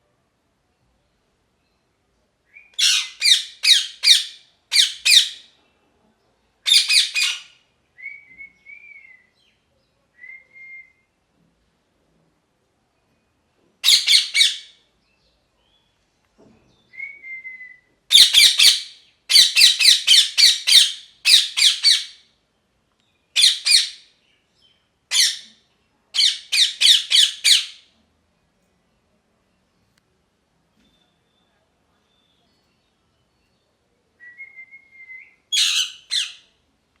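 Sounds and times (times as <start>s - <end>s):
parakeet screeching: 2.8s - 5.4s, 13.8s - 14.7s, 18.1s - 22.2s, 23.4s - 24.0s, 26.2s - 27.8s, 35.5s - 36.4s.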